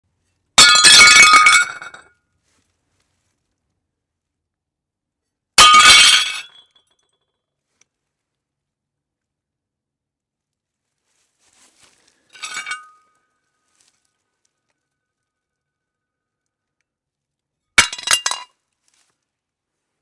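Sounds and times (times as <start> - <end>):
glass shattering: 0.6 - 2.0, 5.6 - 6.6, 17.8 - 18.5.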